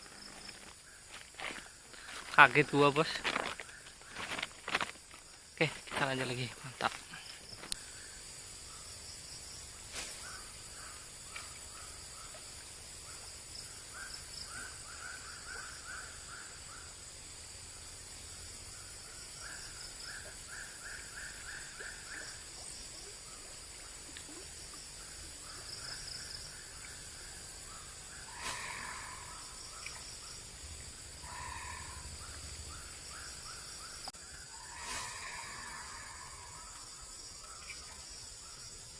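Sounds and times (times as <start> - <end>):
high insect drone: 0.0 - 38.9
pulsed animal calls: 31.2 - 32.7, 34.5 - 36.8.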